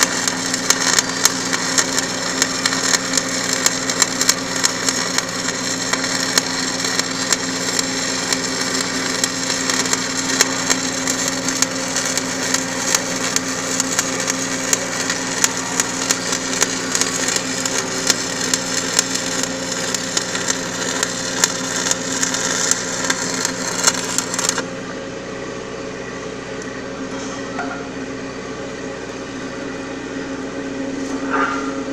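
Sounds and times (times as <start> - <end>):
arc welding crackle: 0.0 - 24.9
steady hum: 0.0 - 31.9.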